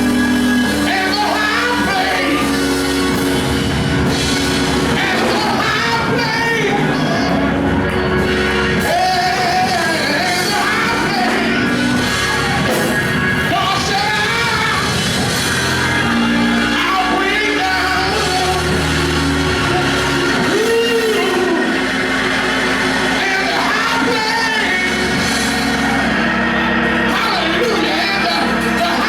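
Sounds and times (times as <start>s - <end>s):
voices singing: 0.0s - 3.4s
band playing: 0.0s - 29.0s.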